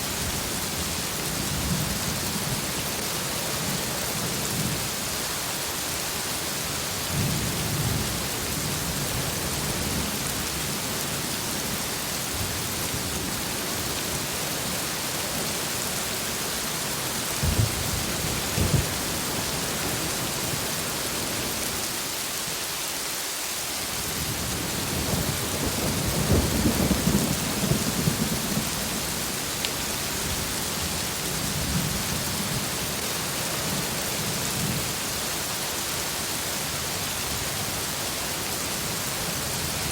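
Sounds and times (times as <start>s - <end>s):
heavy rain falling: 0.0s - 39.9s
thunder cracks: 17.4s - 19.7s
thunder rumbling: 17.4s - 21.6s, 24.3s - 32.6s.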